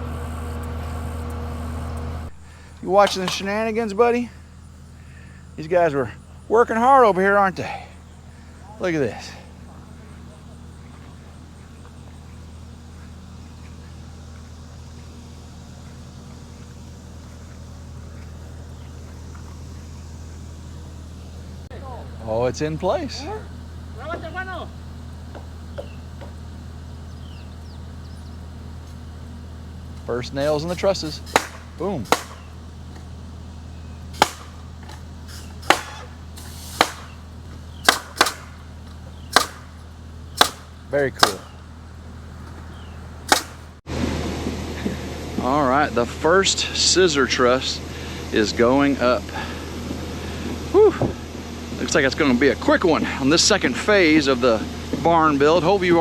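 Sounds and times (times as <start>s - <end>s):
skid steer engine humming: 0.0s - 56.0s
nail gun shots: 3.0s - 3.7s, 30.4s - 32.6s, 34.2s - 34.7s, 35.3s - 41.6s, 43.3s - 43.7s.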